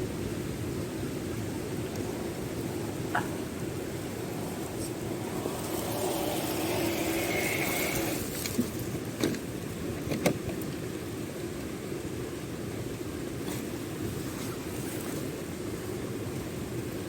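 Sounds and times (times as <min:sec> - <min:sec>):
floodwater rushing: 0:00.0 - 0:10.0, 0:10.8 - 0:17.0
small electric motor whining: 0:02.3 - 0:08.7.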